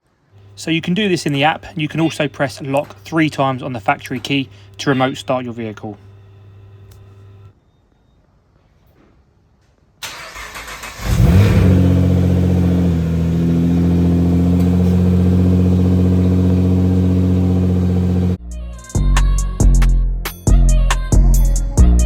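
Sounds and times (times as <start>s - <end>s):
starter motor cranking: 10.1s - 18.4s
car engine revving and idling: 10.6s - 18.4s.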